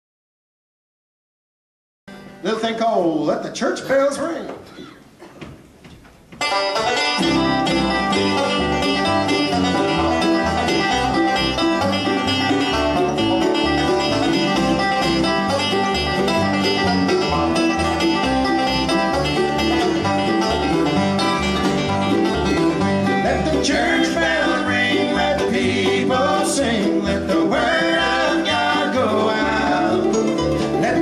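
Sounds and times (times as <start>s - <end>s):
acoustic bluegrass band playing: 6.3s - 31.0s.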